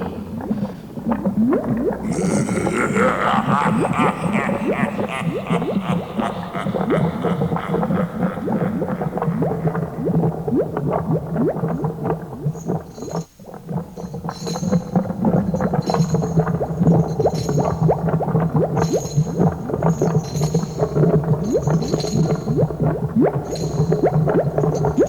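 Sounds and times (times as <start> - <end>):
bubbling pops: 0.0 - 2.1, 3.1 - 25.0.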